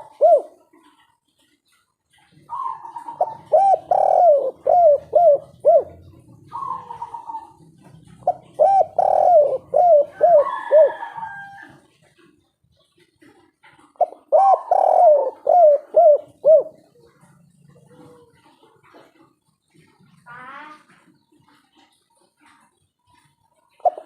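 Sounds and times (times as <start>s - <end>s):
dove cooing: 0.0s - 24.0s.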